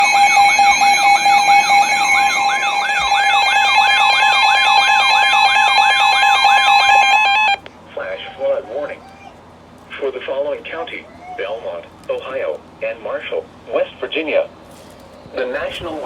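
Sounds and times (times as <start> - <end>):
phone alert tones: 0.0 - 7.6
siren-like falling sweep: 0.0 - 7.6.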